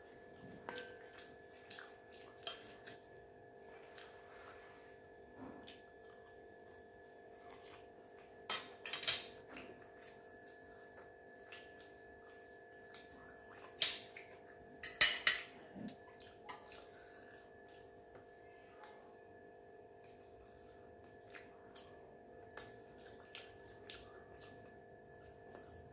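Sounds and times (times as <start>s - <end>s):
faint steady hum: 0.0s - 25.9s.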